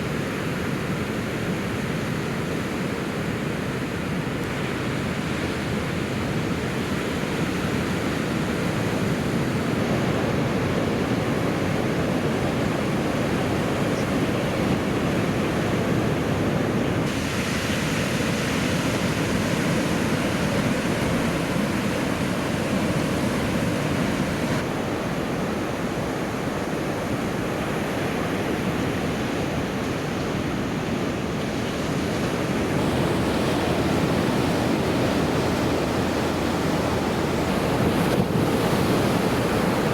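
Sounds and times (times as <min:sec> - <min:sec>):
wind on microphone: 0:30.3 - 0:39.9
surf breaking: 0:31.9 - 0:39.9.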